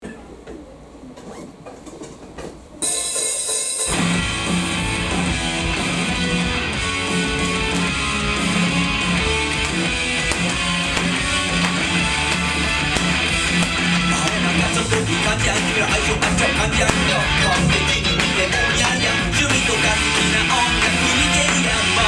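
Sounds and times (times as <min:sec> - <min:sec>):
low room murmur: 0:00.0 - 0:03.7.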